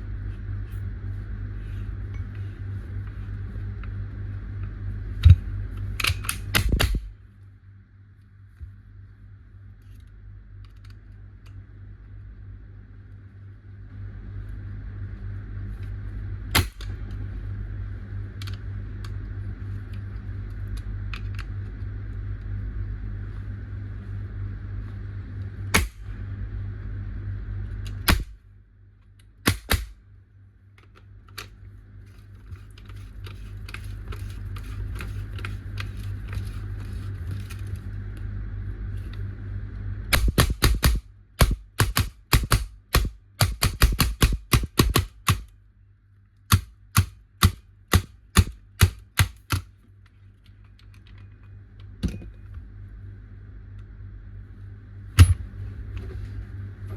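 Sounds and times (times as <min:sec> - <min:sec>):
steady low hum: 0:00.0 - 0:56.9
sharp cracks: 0:29.5 - 0:29.9, 0:40.1 - 0:45.4.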